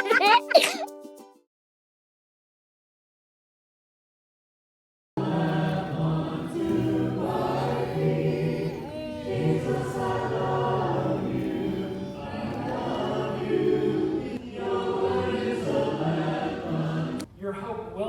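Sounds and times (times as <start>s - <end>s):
choir singing held notes: 5.2s - 17.3s.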